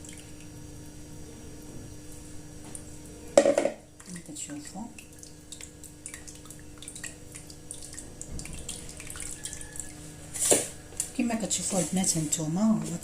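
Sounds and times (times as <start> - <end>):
syrup dripping through a strainer: 4.0 - 10.1.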